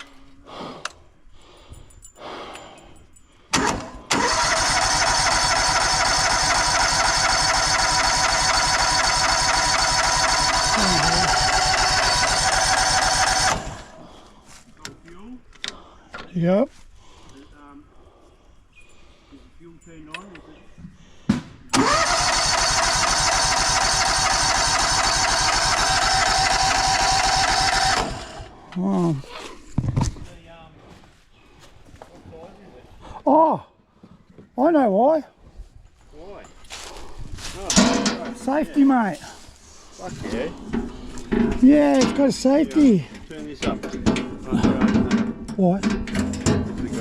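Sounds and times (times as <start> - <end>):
sawmill engine starting and running: 3.6 - 14.3, 21.7 - 29.2.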